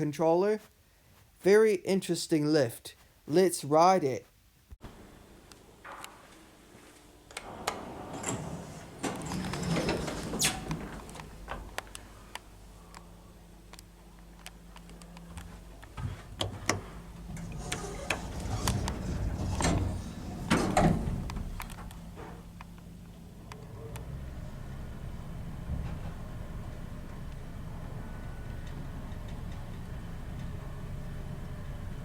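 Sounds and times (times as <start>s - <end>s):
lift motor humming: 7.2s - 32.0s
lift doors sliding: 7.3s - 12.2s, 16.1s - 32.0s.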